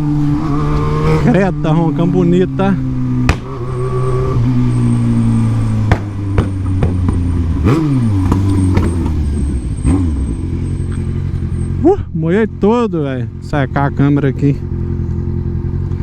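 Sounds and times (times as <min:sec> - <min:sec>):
motorcycle engine running: 0:00.0 - 0:16.0
sharp cracks: 0:03.2 - 0:03.8, 0:05.7 - 0:09.2.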